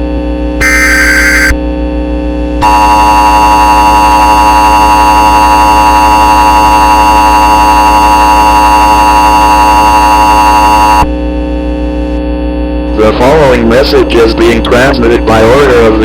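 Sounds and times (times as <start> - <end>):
constant low hum: 0.0 - 16.0
loud harsh alert tone: 0.6 - 1.6, 2.6 - 11.1.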